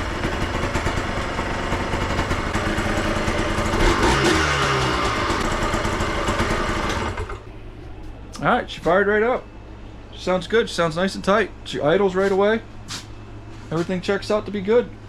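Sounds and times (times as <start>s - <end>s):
engine revving: 0.0s - 7.4s
two-stroke engine running: 0.0s - 7.5s.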